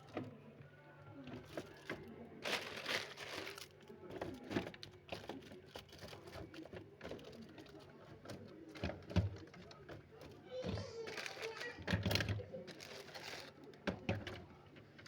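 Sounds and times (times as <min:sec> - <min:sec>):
plastic packaging crinkling: 0:01.5 - 0:04.0, 0:12.7 - 0:13.6.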